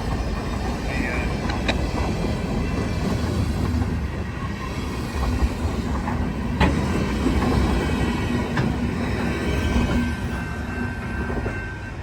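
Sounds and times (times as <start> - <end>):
train wheels rumbling on rail: 0.0 - 12.0
wheels clacking over rail joint: 0.1 - 4.0.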